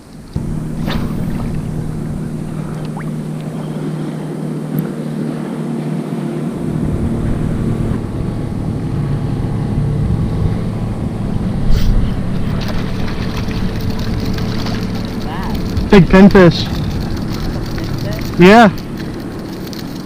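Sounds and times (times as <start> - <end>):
water washing: 0.0 - 8.0, 12.0 - 20.0
wind buffeting microphone: 0.0 - 20.0.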